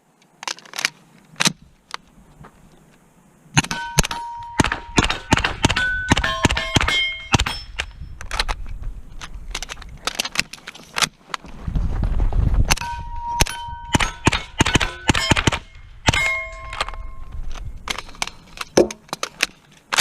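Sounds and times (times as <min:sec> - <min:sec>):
rapid pistol shots: 0:03.6 - 0:07.8, 0:13.9 - 0:16.4
steel targets ringing: 0:03.6 - 0:07.8, 0:12.8 - 0:17.3.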